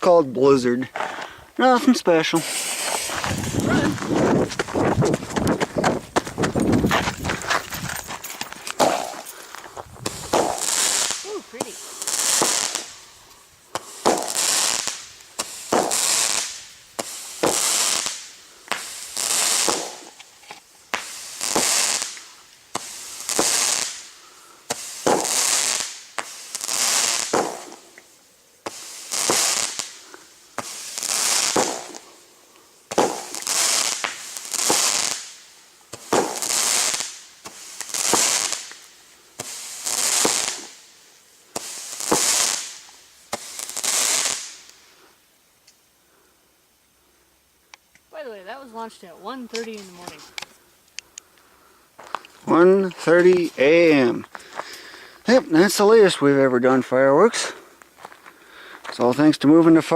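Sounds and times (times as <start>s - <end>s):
firework hissing crackle: 0.1s - 59.9s
firework bangs: 2.1s - 20.2s, 20.9s - 32.2s, 32.9s - 44.8s.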